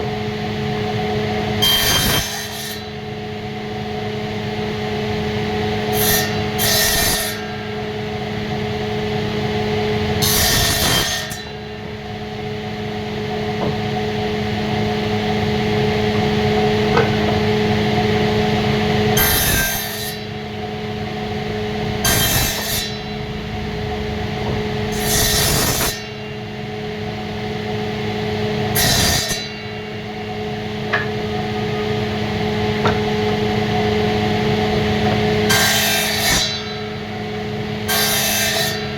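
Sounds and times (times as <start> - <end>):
machine hum: 11.3 - 38.0
tool cutting wood: 19.1 - 20.3, 22.0 - 23.1, 24.4 - 26.2.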